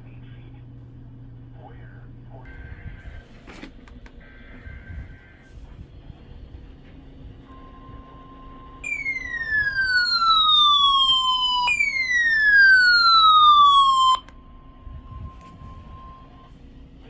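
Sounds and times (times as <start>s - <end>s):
steady warning tone: 4.2s - 16.9s
falling electronic siren sweeps: 7.5s - 16.6s.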